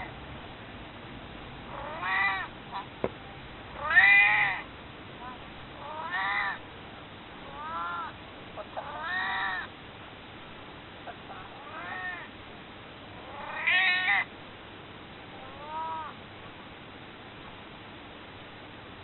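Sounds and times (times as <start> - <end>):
cat meowing: 1.7 - 2.9, 3.8 - 4.6, 5.8 - 6.6, 7.5 - 9.7, 11.4 - 12.3, 13.3 - 14.3, 15.4 - 16.2.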